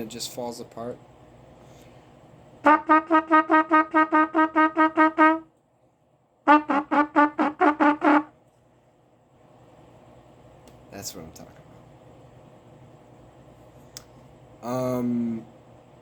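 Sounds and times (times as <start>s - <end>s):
trumpet repeated tongued notes: 2.6s - 5.5s, 6.4s - 8.3s.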